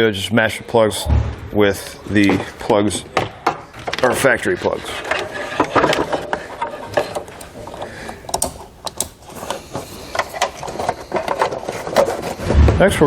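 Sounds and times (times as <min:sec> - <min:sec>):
plastic plugs clicking and rattling: 0:06.9 - 0:12.4.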